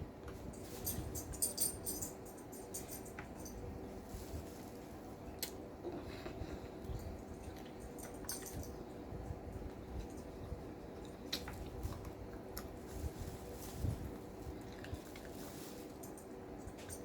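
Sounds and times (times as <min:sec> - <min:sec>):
steady low hum: 0:00.0 - 0:17.0
person chewing a sandwich: 0:09.7 - 0:16.0.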